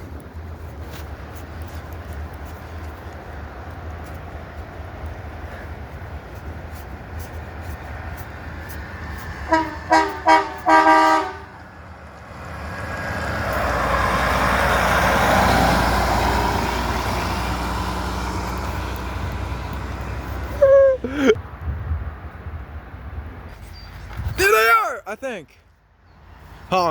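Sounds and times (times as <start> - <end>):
vehicle passing with road noise: 0.0 - 24.3
truck horn honking: 9.4 - 11.7, 20.6 - 21.0.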